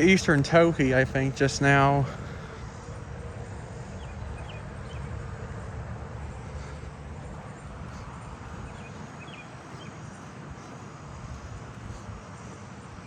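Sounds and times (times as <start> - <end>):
low outdoor rumble: 0.0 - 13.0
faint bird chirps: 6.2 - 13.0.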